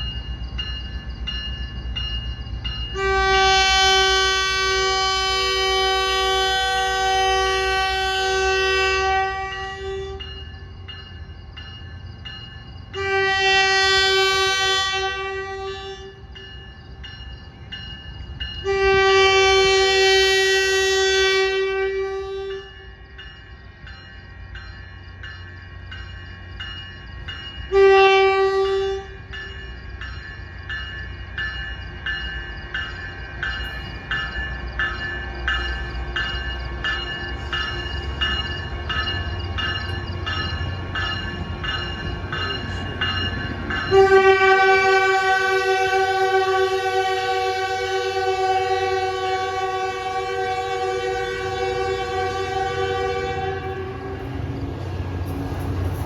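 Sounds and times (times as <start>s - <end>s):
train horn blasts: 2.9s - 10.4s, 13.0s - 16.2s, 18.6s - 22.9s, 27.7s - 29.3s, 43.8s - 54.5s.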